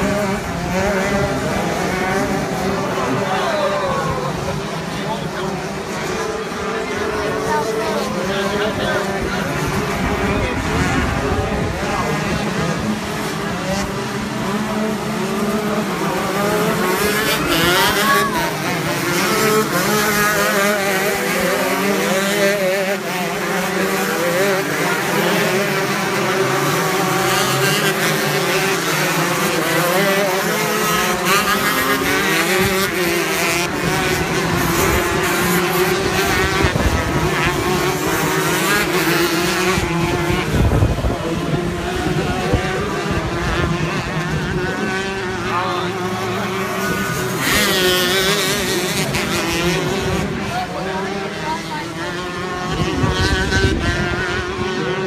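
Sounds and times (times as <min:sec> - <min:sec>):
kart engines racing: 0:00.0 - 0:55.0.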